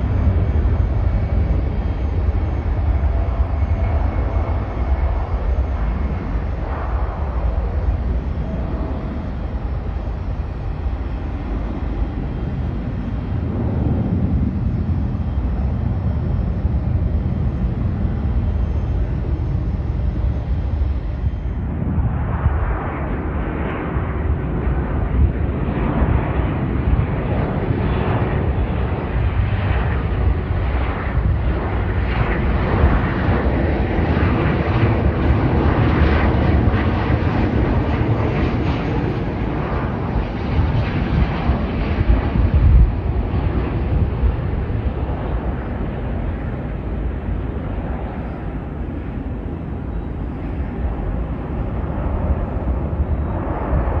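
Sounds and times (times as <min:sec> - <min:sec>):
jet airliner engines passing: 0:00.0 - 0:54.0.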